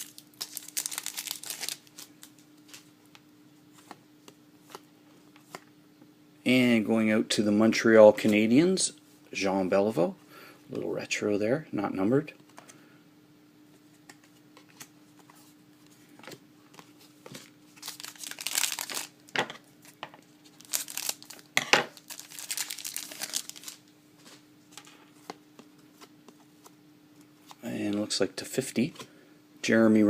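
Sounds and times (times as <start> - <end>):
card pack wrapper crinkling: 0.0 - 2.9, 16.7 - 19.2, 19.8 - 23.8
faint steady hum: 0.0 - 30.0.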